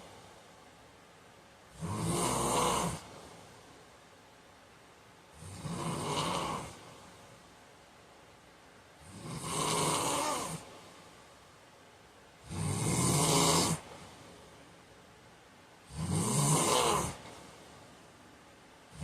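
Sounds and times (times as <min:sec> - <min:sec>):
man snoring: 0:01.7 - 0:03.1, 0:05.3 - 0:06.8, 0:09.0 - 0:10.7, 0:12.4 - 0:13.9, 0:15.9 - 0:17.3.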